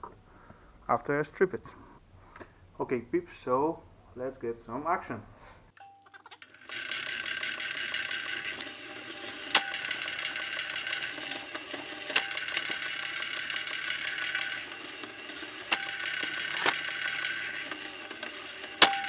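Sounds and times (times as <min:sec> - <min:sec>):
sharp mechanical clicks: 0:06.1 - 0:19.0
wire stripping machine humming: 0:06.1 - 0:19.0.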